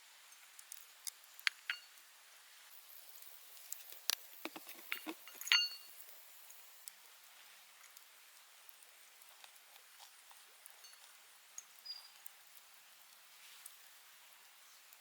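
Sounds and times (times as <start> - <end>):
ringing clinks: 1.7 - 1.9, 4.9 - 6.0
light taps of small hard objects: 3.6 - 6.0.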